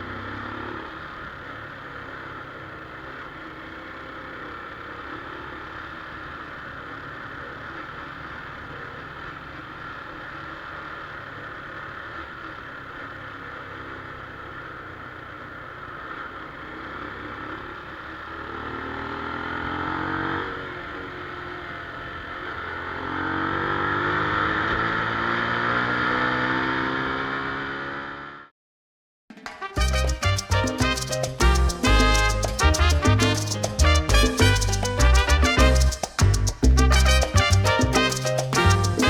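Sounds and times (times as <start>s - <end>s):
motorcycle engine revving: 0.0s - 28.5s.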